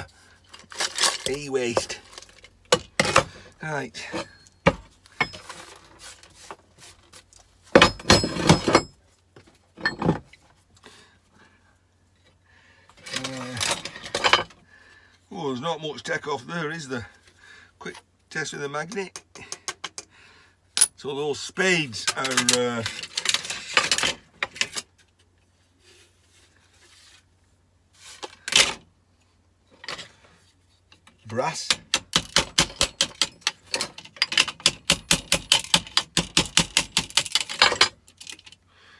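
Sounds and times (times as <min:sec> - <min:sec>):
electronic parts clattering: 0:00.4 - 0:03.4, 0:04.0 - 0:06.3, 0:07.7 - 0:09.0, 0:09.8 - 0:10.4, 0:13.0 - 0:14.6, 0:22.0 - 0:24.8.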